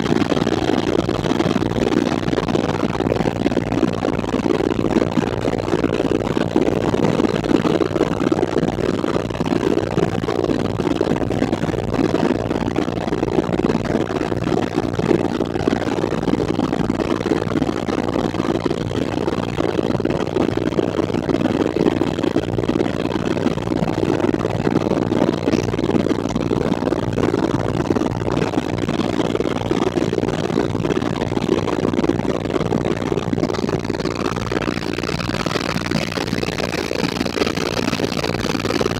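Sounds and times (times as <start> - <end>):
helicopter engine and rotor: 0.0 - 8.1, 23.0 - 38.9.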